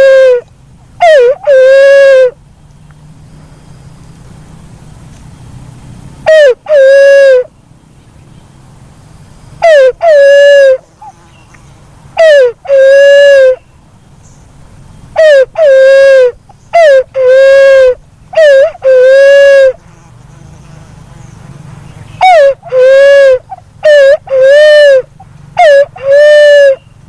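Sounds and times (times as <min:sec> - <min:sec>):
dove calling: 0:00.0 - 0:02.4, 0:06.2 - 0:07.5, 0:09.6 - 0:14.5, 0:15.1 - 0:19.8, 0:21.2 - 0:27.0.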